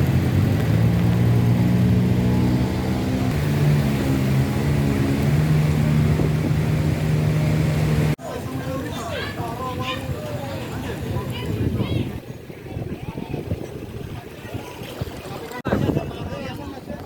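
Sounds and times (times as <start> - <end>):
engine running with low hum: 0.0 - 8.2.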